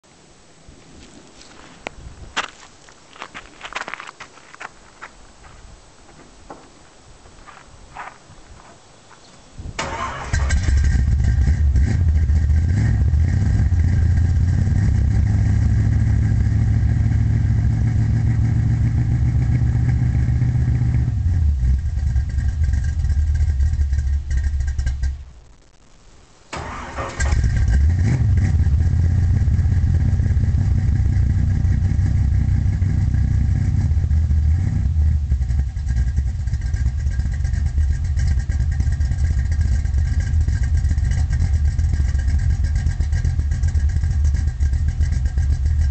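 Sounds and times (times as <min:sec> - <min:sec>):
engine firing up: 0:09.8 - 0:25.2, 0:26.5 - 0:45.9
car engine idling roughly: 0:21.7 - 0:25.2, 0:35.1 - 0:45.9.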